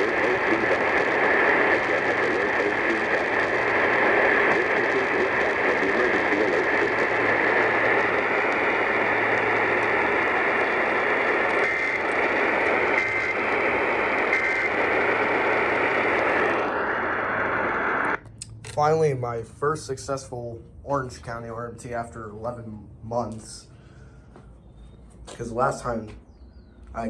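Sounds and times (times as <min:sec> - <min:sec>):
short data bursts: 0:00.0 - 0:18.2
radio static hiss: 0:00.0 - 0:23.9, 0:25.3 - 0:26.2
low hum: 0:00.0 - 0:27.0.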